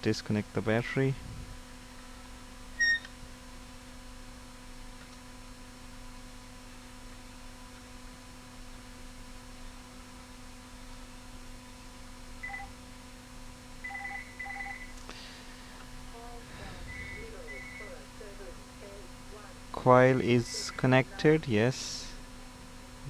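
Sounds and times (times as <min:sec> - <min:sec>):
electrical hum: 0:00.0 - 0:23.0
multimeter beeps: 0:02.8 - 0:03.1, 0:12.4 - 0:12.7, 0:13.8 - 0:15.0, 0:16.9 - 0:18.4.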